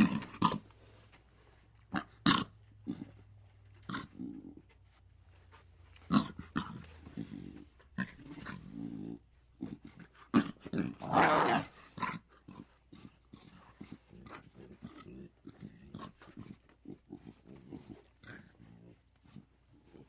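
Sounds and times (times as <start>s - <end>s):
animal vocal sounds: 0.0s - 20.0s.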